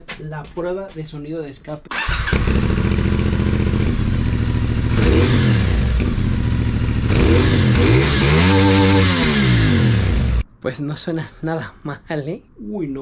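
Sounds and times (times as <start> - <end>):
motorcycle engine idling and revving: 1.9 - 10.4.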